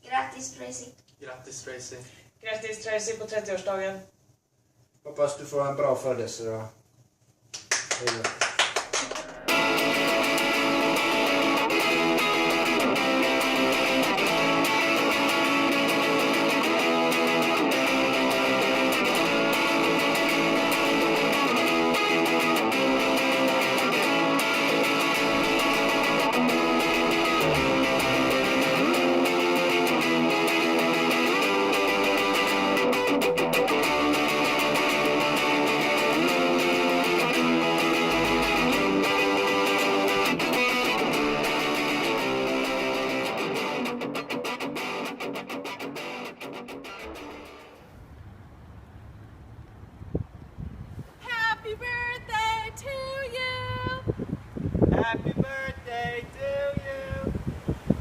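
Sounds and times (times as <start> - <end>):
guitar strummed and plucked: 9.0 - 47.9.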